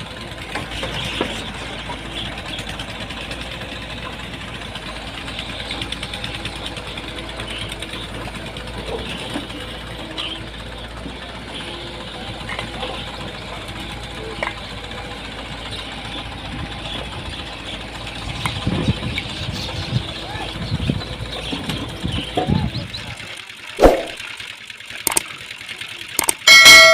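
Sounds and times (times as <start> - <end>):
heavy machine engine chugging: 0.0 - 26.9
faint voices of workers: 6.9 - 15.2, 19.6 - 23.6.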